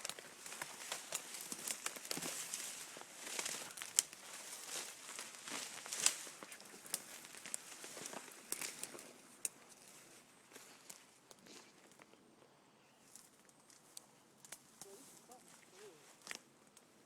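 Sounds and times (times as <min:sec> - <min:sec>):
footsteps crunching through dry leaves: 0:00.0 - 0:11.1
twigs snapping: 0:00.0 - 0:12.1, 0:13.1 - 0:15.0, 0:15.6 - 0:16.9.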